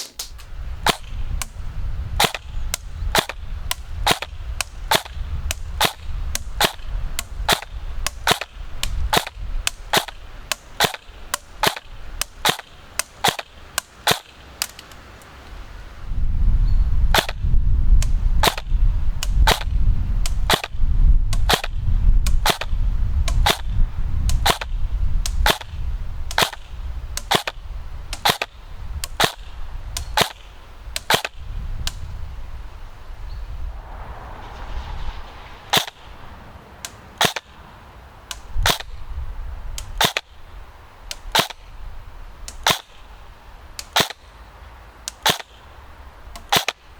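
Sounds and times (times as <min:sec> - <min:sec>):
airsoft gun firing single shots: 0:00.0 - 0:01.6, 0:02.2 - 0:15.0, 0:17.1 - 0:32.1, 0:35.7 - 0:36.2, 0:36.8 - 0:39.1, 0:39.7 - 0:41.8, 0:42.4 - 0:43.2, 0:43.8 - 0:44.4, 0:45.1 - 0:45.7, 0:46.4 - 0:46.9
low rumble: 0:33.1 - 0:36.8.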